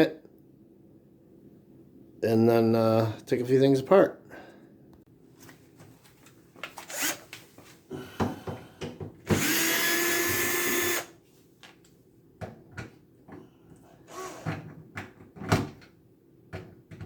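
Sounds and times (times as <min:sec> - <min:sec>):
power drill running: 0:06.9 - 0:07.2, 0:09.4 - 0:11.1, 0:14.1 - 0:14.4.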